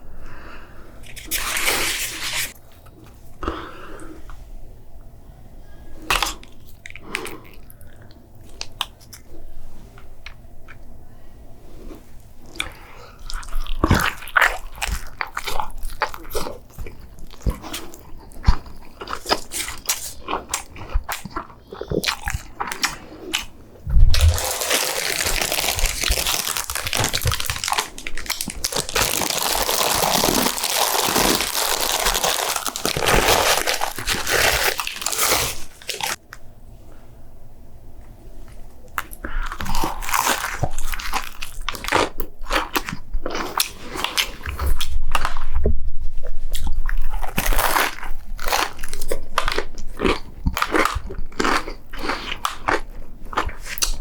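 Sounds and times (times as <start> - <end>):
chewing crunchy food: 6.0 - 9.4, 12.4 - 36.2, 38.8 - 54.0.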